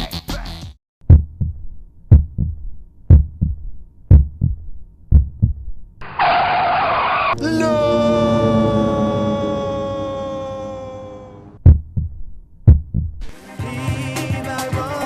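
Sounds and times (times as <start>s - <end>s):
heartbeat thumps: 1.0s - 5.9s, 11.6s - 13.2s.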